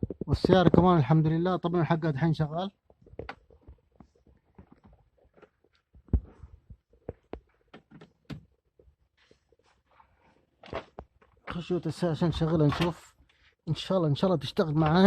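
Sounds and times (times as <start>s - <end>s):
handling clicks and knocks: 2.8s - 9.0s, 10.6s - 13.1s, 14.6s - 15.0s.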